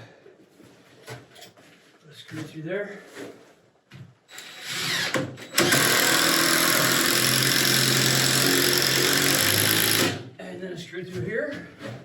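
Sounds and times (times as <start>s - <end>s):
power drill driving screw into wood: 4.3s - 10.2s.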